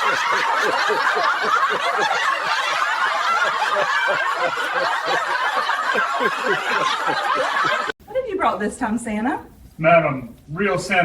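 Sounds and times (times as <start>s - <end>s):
group of people laughing: 0.0s - 8.0s.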